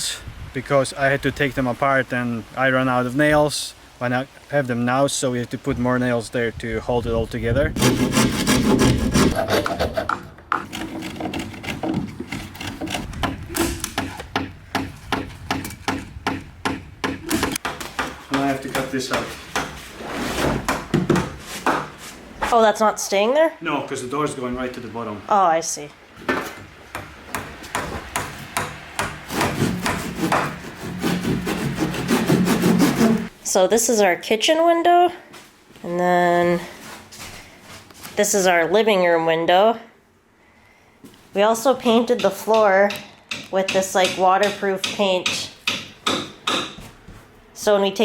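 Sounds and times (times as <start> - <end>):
hand saw cutting wood: 7.8 - 14.2, 27.3 - 33.3
rasping on wood: 7.8 - 19.9, 27.3 - 33.3
knocks on wood: 11.8 - 19.8, 20.6 - 21.9.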